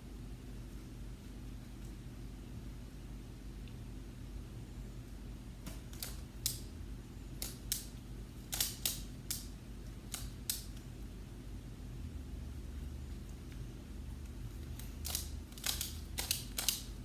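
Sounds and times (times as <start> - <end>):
puzzle cube plastic clicks: 8.5 - 9.5, 14.7 - 17.0.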